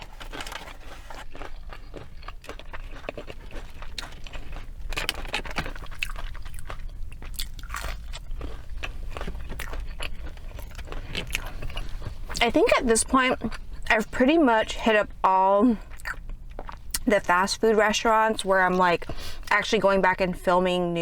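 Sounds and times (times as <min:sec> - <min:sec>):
person chewing crunchy food: 0:00.0 - 0:15.0, 0:15.8 - 0:17.1.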